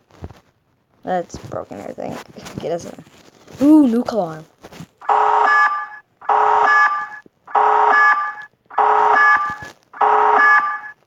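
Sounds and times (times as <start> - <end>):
pulsed alarm blasts: 5.0 - 11.0.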